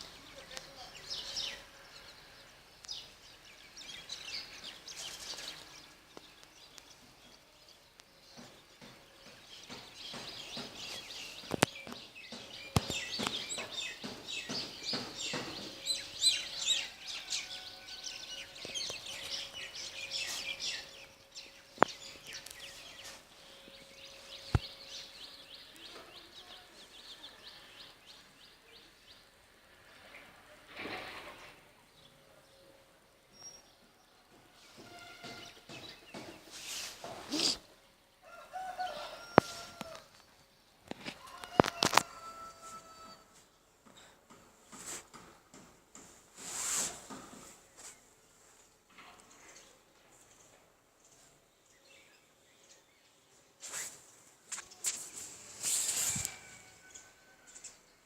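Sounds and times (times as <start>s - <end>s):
small birds chirping: 0.0s - 30.5s, 31.9s - 46.0s.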